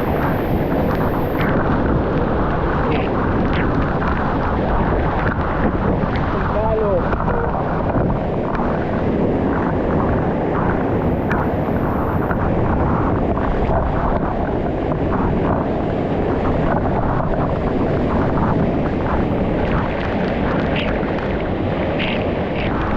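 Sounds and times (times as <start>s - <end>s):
fast-flowing water rushing: 0.0s - 1.8s, 3.8s - 12.5s.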